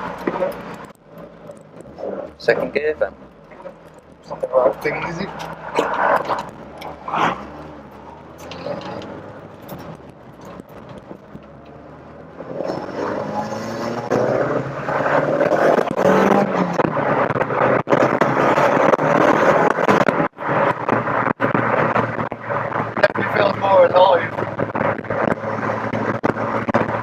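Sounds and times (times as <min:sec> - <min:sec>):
car engine accelerating hard: 0:00.0 - 0:27.0.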